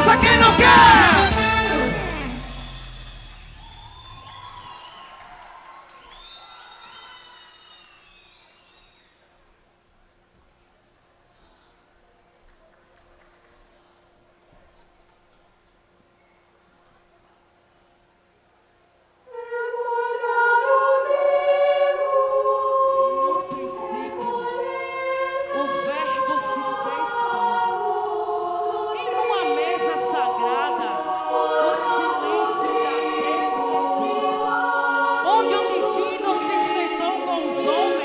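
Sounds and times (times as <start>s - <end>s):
choir singing held chords: 0.0s - 4.5s, 19.3s - 38.0s.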